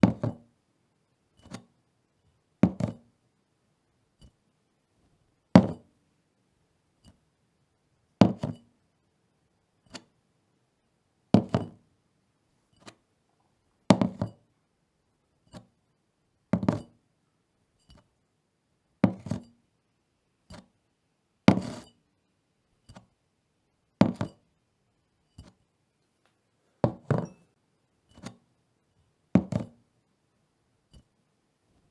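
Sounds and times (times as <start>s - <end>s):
bottle knocking on wooden table: 14.0s - 14.4s, 26.8s - 27.5s.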